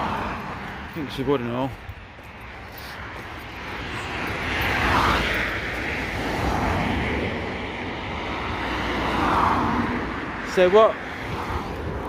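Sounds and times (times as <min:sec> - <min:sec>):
vehicle passing: 0:00.0 - 0:12.0
wind buffeting microphone: 0:11.0 - 0:12.0.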